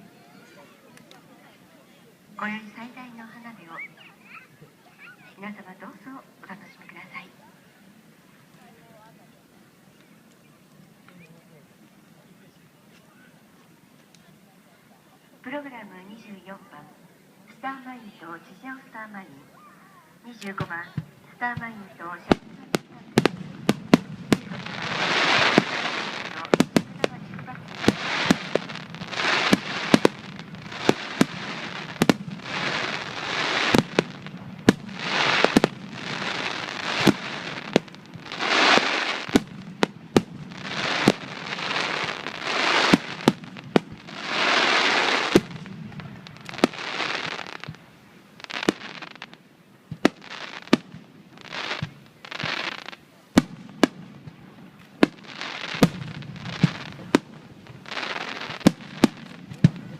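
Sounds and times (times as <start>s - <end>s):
fireworks hissing: 20.2s - 59.9s
fireworks booming: 20.4s - 59.9s.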